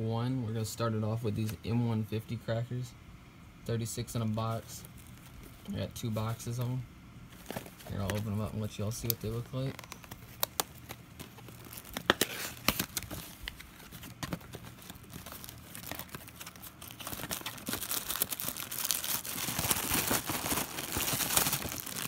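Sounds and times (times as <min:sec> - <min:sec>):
packaging crinkling and tearing: 0:04.1 - 0:06.6, 0:07.3 - 0:22.0.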